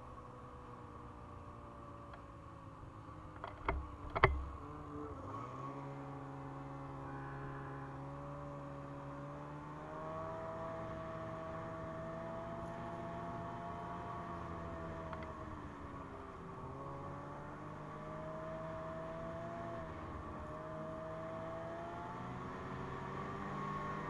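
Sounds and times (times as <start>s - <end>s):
sharp knocks: 3.4s - 4.6s.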